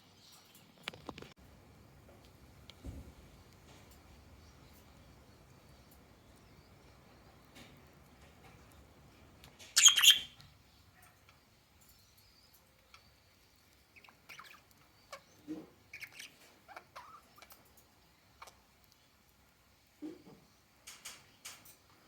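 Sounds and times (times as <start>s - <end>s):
budgerigar chirps: 9.8s - 10.4s
budgerigar squawk: 9.8s - 10.4s.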